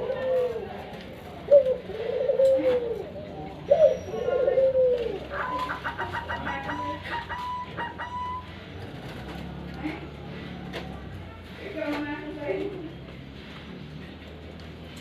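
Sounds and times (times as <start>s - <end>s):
dove cooing: 0.0s - 10.1s.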